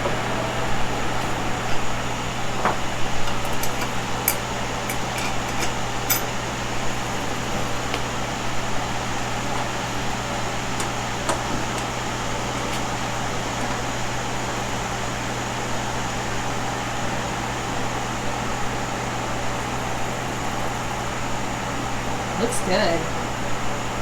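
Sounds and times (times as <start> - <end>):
mechanical hum: 0.0 - 24.0.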